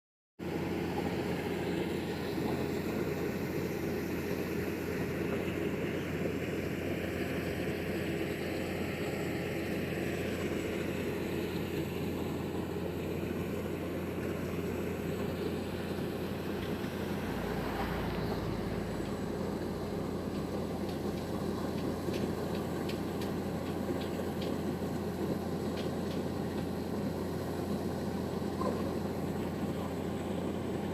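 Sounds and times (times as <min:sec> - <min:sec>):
constant low hum: 0:00.4 - 0:30.9
construction machinery engine running: 0:00.4 - 0:30.9.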